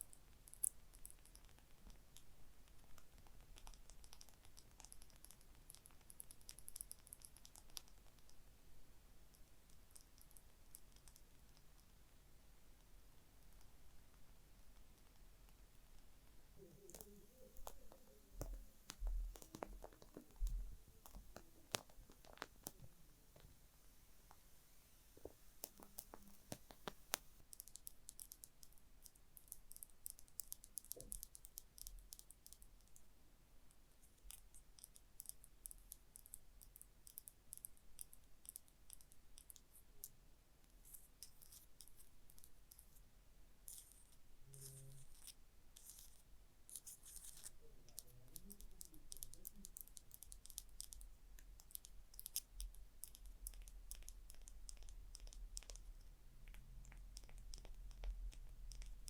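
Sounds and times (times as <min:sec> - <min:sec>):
tapping and scratching on hard object: 0:16.8 - 0:23.5, 0:43.7 - 0:59.0.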